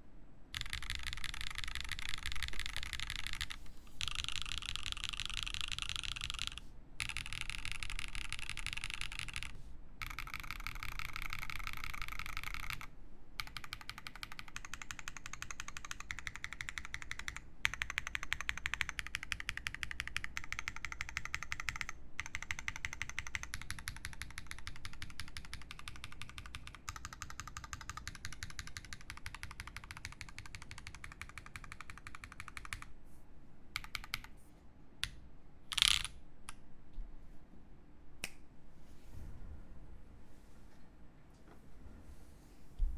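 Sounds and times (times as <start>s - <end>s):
fast typing on mechanical keyboard: 0.5s - 32.9s, 33.8s - 34.3s, 35.7s - 36.1s.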